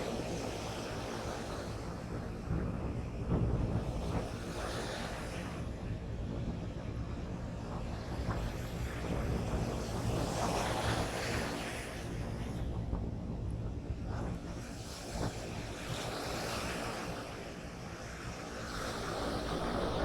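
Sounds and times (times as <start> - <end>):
constant low rumble: 0.0 - 20.0
wind buffeting microphone: 0.0 - 20.0
surf breaking on a beach: 14.7 - 20.0.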